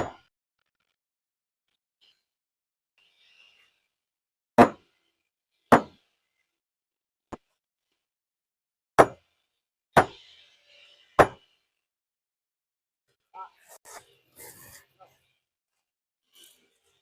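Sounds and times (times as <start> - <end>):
hammer striking stone: 0.0 - 0.3, 4.6 - 4.8, 5.7 - 6.0, 9.0 - 9.2, 10.0 - 10.2, 11.2 - 11.4.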